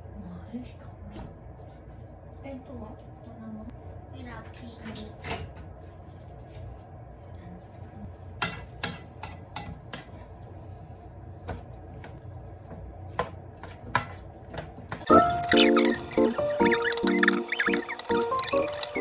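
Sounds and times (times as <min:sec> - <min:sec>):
dishes and cookware clinking: 0:08.4 - 0:10.4, 0:11.4 - 0:17.5.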